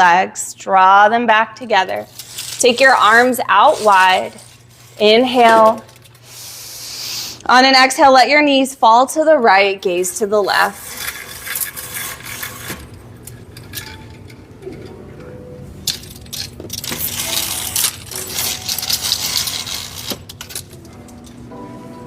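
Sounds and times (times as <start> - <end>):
soft background music: 8.8 - 22.0.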